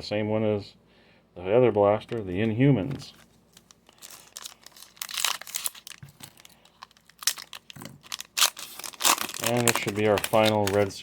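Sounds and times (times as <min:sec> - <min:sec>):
plastic wrapper tearing and crinkling: 0:03.1 - 0:11.0.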